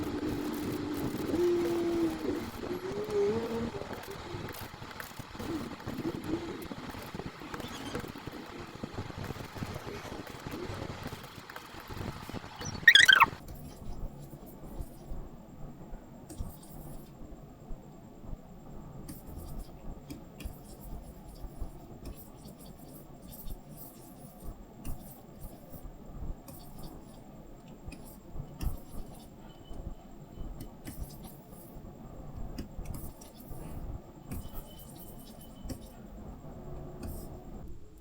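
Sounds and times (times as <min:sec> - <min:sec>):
stylus scratching on tablet: 0:12.6 - 0:15.2, 0:16.3 - 0:17.1, 0:19.1 - 0:19.8, 0:20.4 - 0:27.3, 0:27.9 - 0:29.5, 0:30.6 - 0:31.8, 0:32.8 - 0:36.0, 0:37.0 - 0:37.4.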